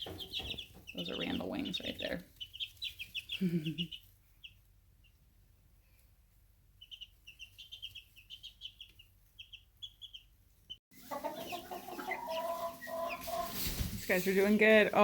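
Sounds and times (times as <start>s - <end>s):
chicks peeping: 0.0s - 15.0s
adult fowl clucking: 11.0s - 13.8s.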